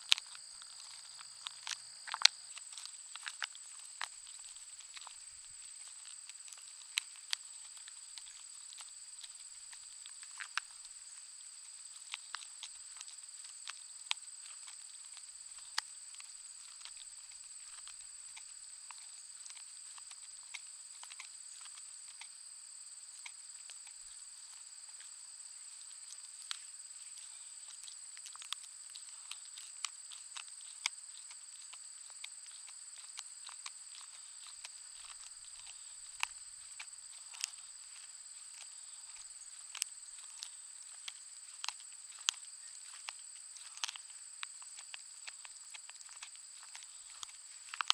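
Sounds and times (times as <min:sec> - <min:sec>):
dog gnawing a bone: 0:00.0 - 0:07.4, 0:27.2 - 0:42.4, 0:43.0 - 0:47.9.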